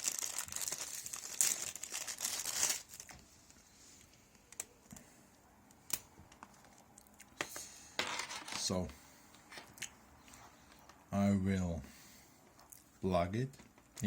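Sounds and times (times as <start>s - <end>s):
plastic packaging crinkling: 0.0s - 3.6s.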